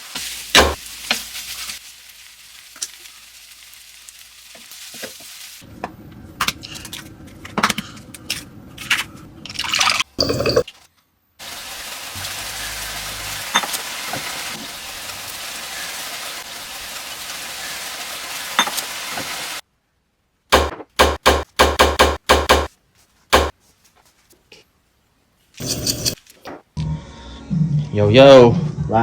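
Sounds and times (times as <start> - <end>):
food sizzling in a pan: 0.0 - 5.7, 11.4 - 19.6.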